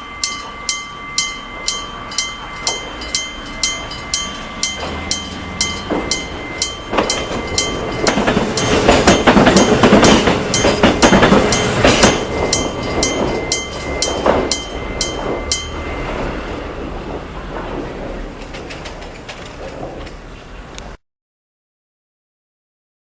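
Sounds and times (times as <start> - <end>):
level crossing bell ringing: 0.0 - 16.7
train passing: 0.0 - 21.0.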